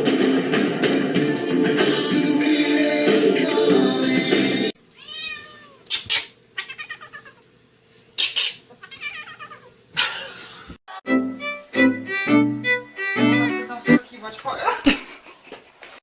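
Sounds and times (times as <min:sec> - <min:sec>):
cat meowing and yowling: 0:05.0 - 0:05.9, 0:06.6 - 0:07.4, 0:08.8 - 0:09.7.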